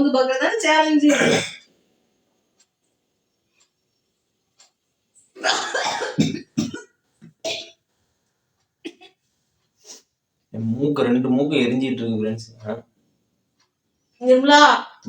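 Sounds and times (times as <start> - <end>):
person coughing: 1.1 - 1.6, 5.4 - 7.8, 8.9 - 9.2
clock ticking faintly: 1.6 - 15.0.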